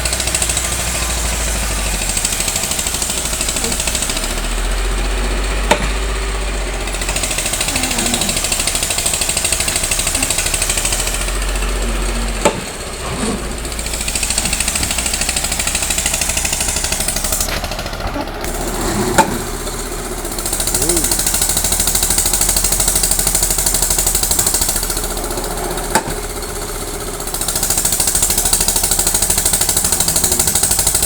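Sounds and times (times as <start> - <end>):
low engine hum: 0.0 - 31.0
powered hammer pounding stakes: 0.0 - 31.0
sharp knocks: 5.6 - 6.1.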